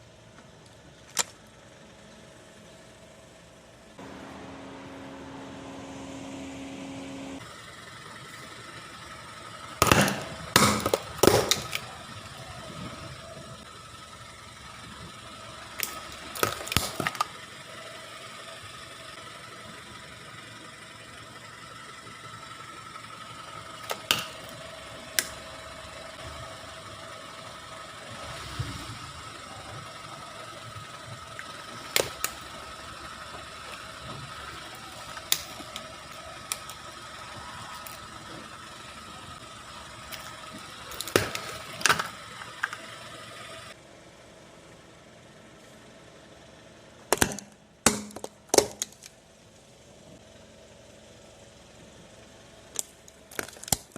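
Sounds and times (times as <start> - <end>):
car engine humming: 0.0 - 53.9
electronics cracking under car tyre: 9.7 - 12.2, 14.9 - 17.5, 23.5 - 25.5, 30.7 - 38.6, 39.3 - 43.7, 47.1 - 49.2, 52.7 - 53.9.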